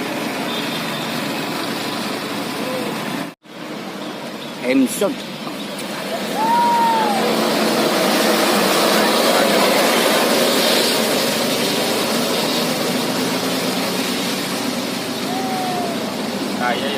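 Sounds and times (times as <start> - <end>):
bus engine and road noise: 0.0 - 16.9
voices: 8.6 - 10.5, 15.2 - 16.9.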